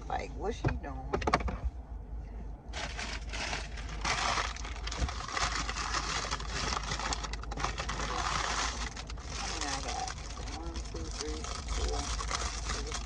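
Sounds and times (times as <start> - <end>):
paper bag rustling and crinkling: 2.7 - 13.0.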